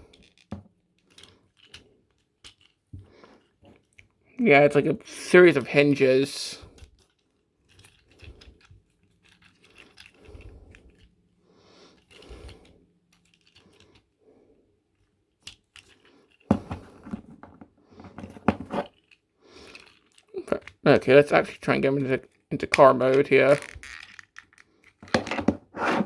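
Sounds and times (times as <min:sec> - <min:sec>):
plastic parts rubbing: 0:00.0 - 0:04.0, 0:05.3 - 0:14.2, 0:14.9 - 0:26.0
plastic toy clicking: 0:22.1 - 0:25.3.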